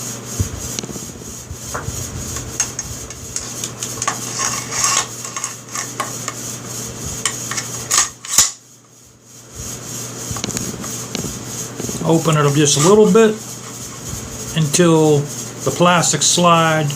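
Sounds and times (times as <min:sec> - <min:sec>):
shotgun parts clicking and scraping: 0:03.4 - 0:06.3, 0:07.3 - 0:08.6.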